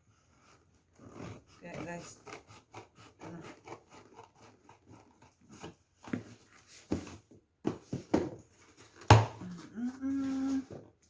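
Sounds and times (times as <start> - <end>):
sharp knocks on cardboard box: 9.0 - 9.4.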